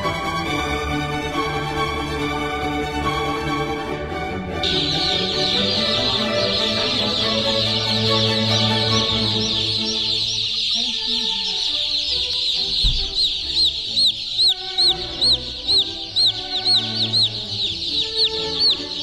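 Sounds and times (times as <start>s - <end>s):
chicks peeping: 4.4s - 19.0s
low thump: 12.7s - 13.3s.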